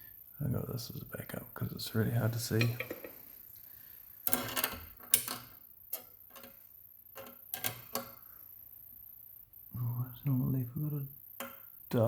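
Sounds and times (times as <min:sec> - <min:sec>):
lock picks clicking and scraping: 0:04.2 - 0:06.6, 0:07.2 - 0:08.2.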